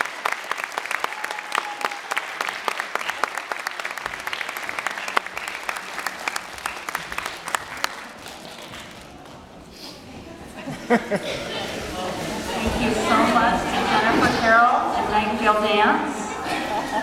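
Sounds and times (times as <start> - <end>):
audience applauding: 0.0 - 9.5.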